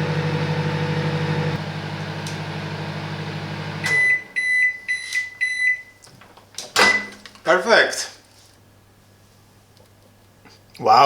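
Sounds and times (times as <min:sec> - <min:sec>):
microwave oven humming: 0:00.0 - 0:06.1.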